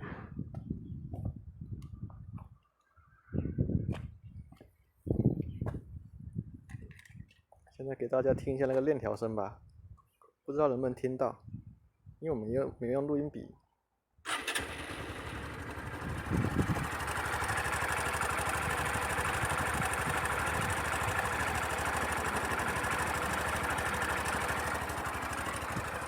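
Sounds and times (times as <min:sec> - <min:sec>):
motorcycle engine idling: 0:14.3 - 0:26.0.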